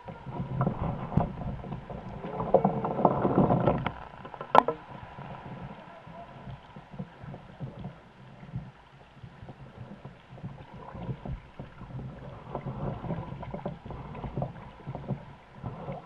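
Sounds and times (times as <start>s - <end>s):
knocks on canoe: 0.0s - 8.7s
paddle strokes in water: 0.0s - 16.0s
water splashing and lapping: 0.0s - 16.0s
wind and sea rumble: 0.0s - 16.0s.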